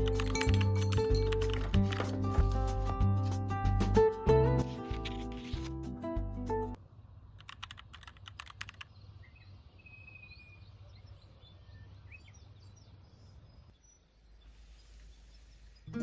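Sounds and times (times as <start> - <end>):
faint bird chirps: 8.8 - 16.0.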